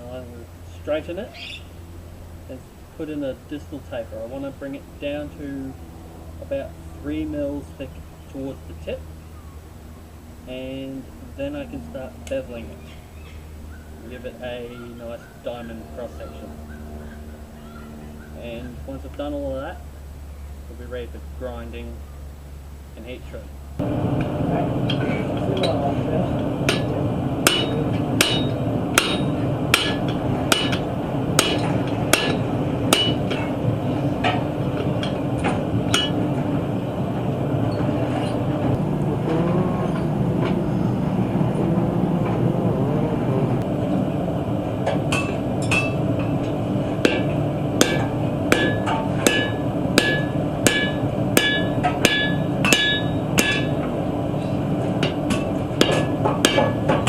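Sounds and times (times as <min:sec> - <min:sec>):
low background noise: 0:00.0 - 0:57.0
hammer ringing on steel: 0:26.7 - 0:33.6, 0:35.9 - 0:36.2, 0:47.0 - 0:53.8, 0:55.8 - 0:56.9.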